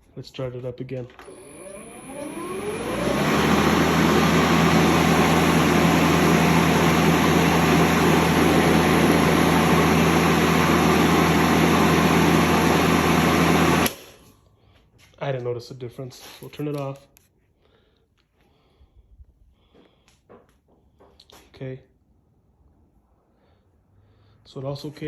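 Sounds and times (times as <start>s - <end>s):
lawn mower motor whine: 1.1s - 14.0s
mower blade whoosh: 1.6s - 14.0s.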